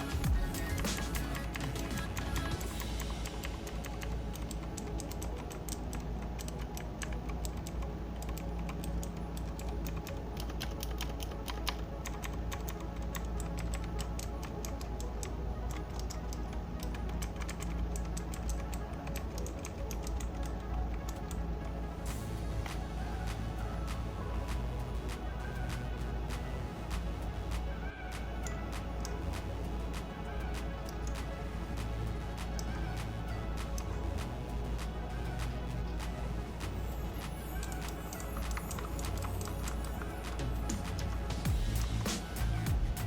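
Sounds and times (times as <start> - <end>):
background music: 0.0 - 43.0
mechanical keyboard typing: 3.4 - 21.4.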